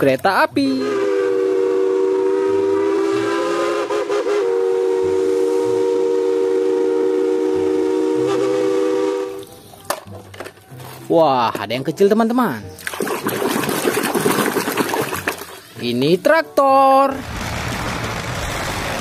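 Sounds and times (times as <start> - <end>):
train whistle chord: 0.7 - 9.6.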